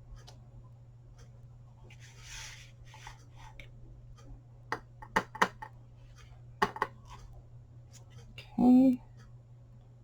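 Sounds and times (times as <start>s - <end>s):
rubber stamps tapping on paper: 4.8s - 5.7s, 6.6s - 6.9s.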